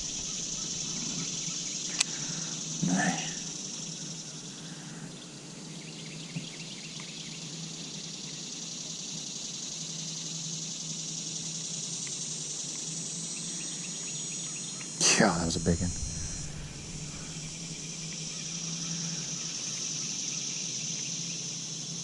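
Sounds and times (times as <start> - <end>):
faint low hum: 0.0 - 5.7, 15.0 - 19.6
insects chorus: 0.0 - 22.0.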